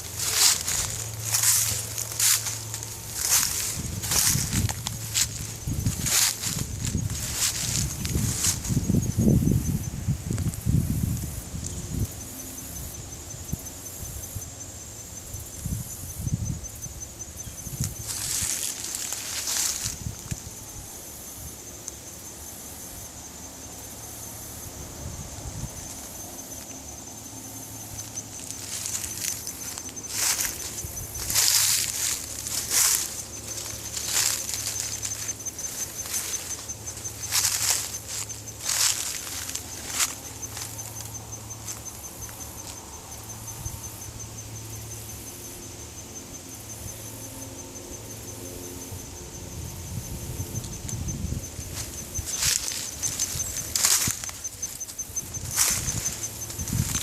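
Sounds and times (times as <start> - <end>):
footstep in dry leaves: 0.0 - 9.1, 17.8 - 20.4, 27.6 - 41.9, 51.2 - 57.0
insect trilling: 0.0 - 57.0.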